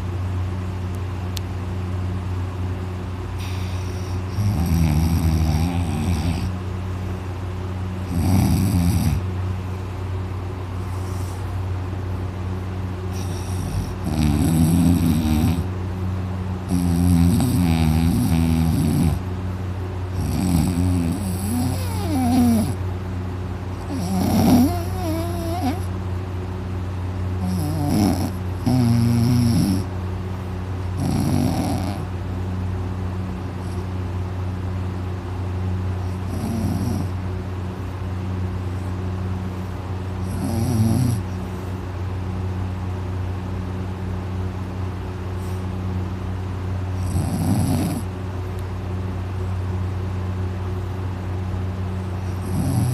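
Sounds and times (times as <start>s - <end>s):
person snoring loudly: 3.4s - 6.6s, 8.0s - 9.2s, 13.1s - 15.7s, 16.7s - 19.2s, 20.1s - 22.8s, 23.8s - 25.9s, 27.4s - 29.9s, 31.0s - 32.1s, 36.1s - 37.2s, 40.2s - 41.3s, 47.0s - 48.1s, 52.3s - 52.9s.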